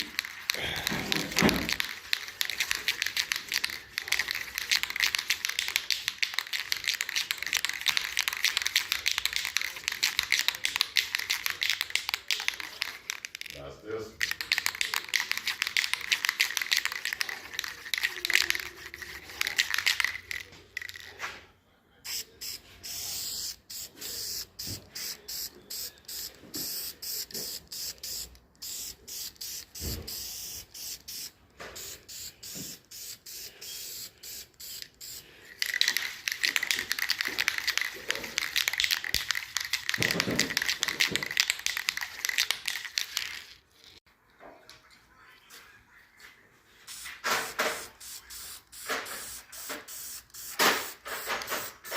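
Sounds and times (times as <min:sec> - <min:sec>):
aerosol can clicks and rattles: 0:00.0 - 0:13.6, 0:14.2 - 0:21.1, 0:22.8 - 0:43.6, 0:46.9 - 0:51.9
aerosol can spraying: 0:22.1 - 0:42.5, 0:46.9 - 0:51.9.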